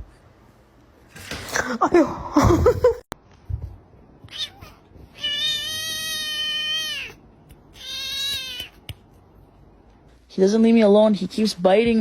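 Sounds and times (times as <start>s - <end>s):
cat meowing: 4.3s - 8.8s.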